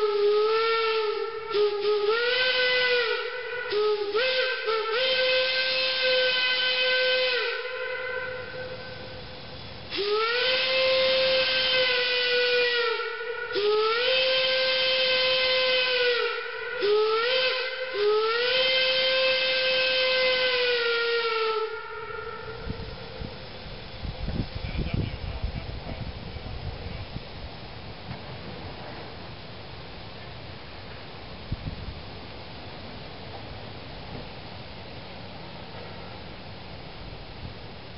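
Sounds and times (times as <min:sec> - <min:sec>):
steam locomotive whistle blasts: 0:00.0 - 0:23.5.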